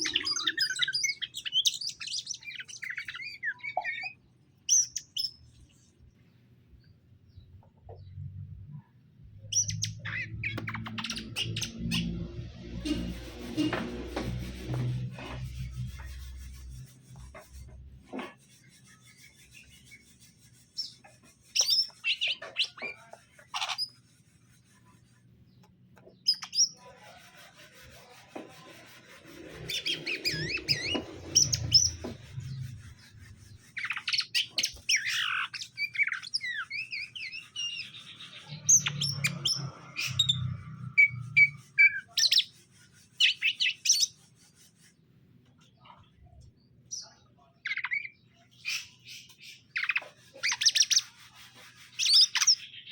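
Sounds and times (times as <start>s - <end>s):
birds chirping and whistling: 0.0s - 5.9s, 9.3s - 13.8s, 19.1s - 24.0s, 26.2s - 26.8s, 29.4s - 44.2s, 47.0s - 52.9s.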